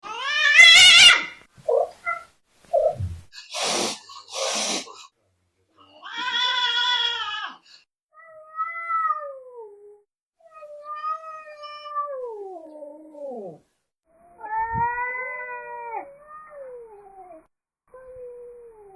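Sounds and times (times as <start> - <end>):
cats yowling: 0.0 - 2.3, 8.2 - 13.6, 14.3 - 18.9
cat hissing: 0.5 - 5.1
cat growling: 12.2 - 13.6.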